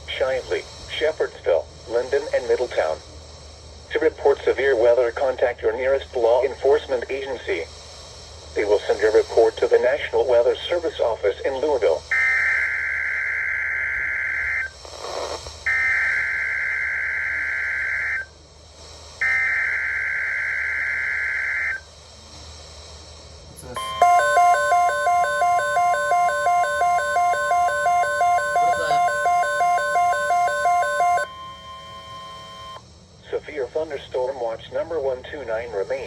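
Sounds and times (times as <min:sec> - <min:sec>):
steady attention tone: 0:23.6 - 0:32.8
rapid pulsing beep: 0:23.7 - 0:32.8.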